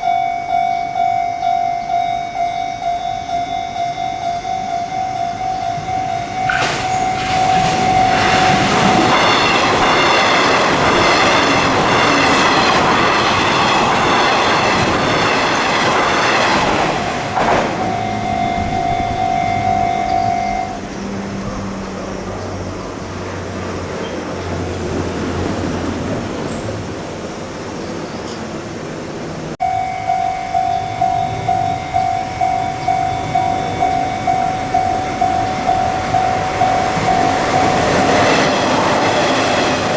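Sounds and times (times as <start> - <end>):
level crossing bell ringing: 0.0 - 16.6, 17.2 - 21.0, 29.6 - 39.4
electric train passing: 0.0 - 39.9
low hum of road vehicles: 17.2 - 39.9.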